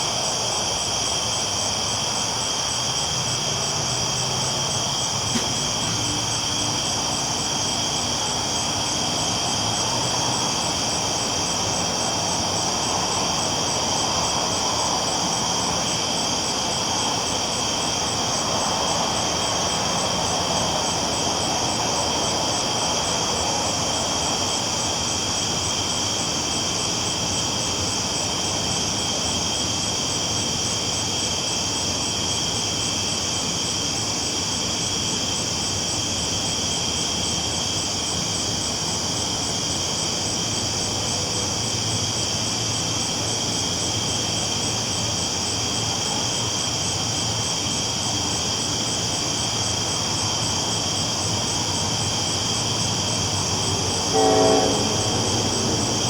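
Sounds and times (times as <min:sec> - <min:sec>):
train rumbling on tracks: 0:03.5 - 0:28.1, 0:50.0 - 0:56.0
high-pitched hiss: 0:36.6 - 0:56.0.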